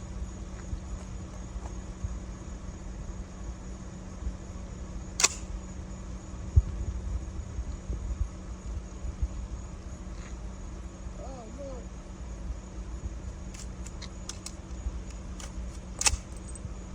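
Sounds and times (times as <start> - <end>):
faint hum: 0.0 - 16.9
sharp crack: 5.2 - 5.5, 13.6 - 16.5.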